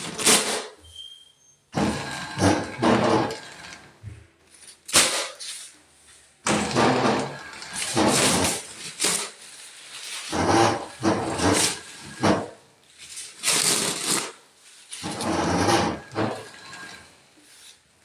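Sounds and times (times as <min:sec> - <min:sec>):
dispenser grinding and squealing: 0:00.8 - 0:03.5, 0:15.0 - 0:17.1.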